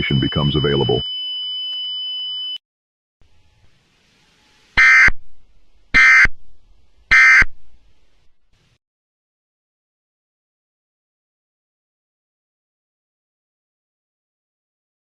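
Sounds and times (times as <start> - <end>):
short data bursts: 4.8 - 6.4, 7.1 - 7.6
high electronic tone: 7.1 - 7.6.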